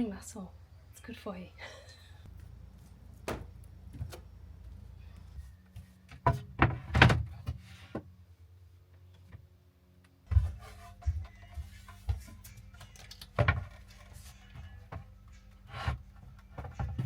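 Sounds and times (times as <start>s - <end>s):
wooden slats knocking and thudding: 3.2s - 4.2s.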